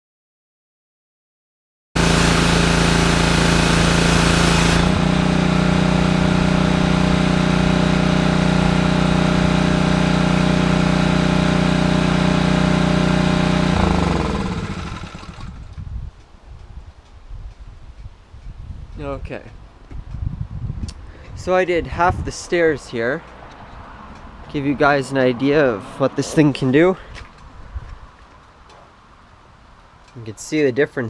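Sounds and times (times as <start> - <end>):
pressure washer engine running: 2.0 - 15.7.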